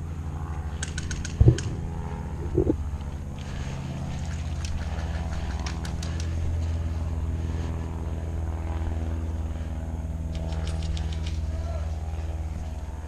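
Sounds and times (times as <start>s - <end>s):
motor droning: 0.0s - 13.0s
sharp clicks: 0.8s - 1.8s.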